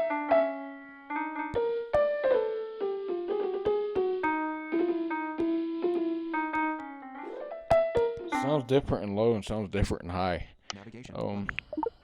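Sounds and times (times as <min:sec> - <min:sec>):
piano notes with old recording tone: 0:00.0 - 0:08.9.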